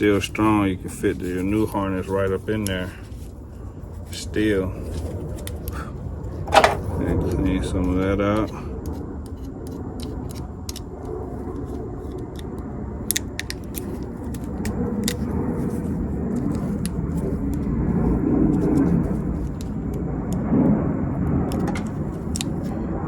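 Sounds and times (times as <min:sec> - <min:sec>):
steady low rumble: 0:10.5 - 0:23.0.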